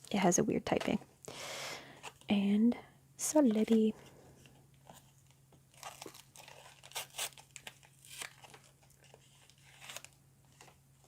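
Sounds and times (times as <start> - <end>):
foil packs crinkling: 5.7 - 10.8.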